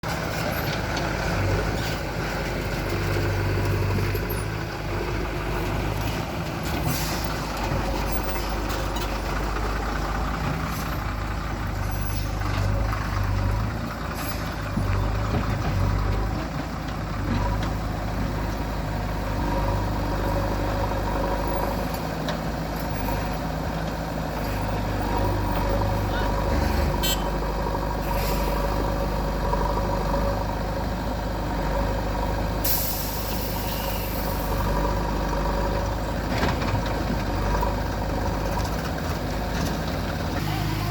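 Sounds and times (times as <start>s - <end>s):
diesel engine under load: 0.0s - 40.9s
machinery knocks and clanks: 14.2s - 18.6s.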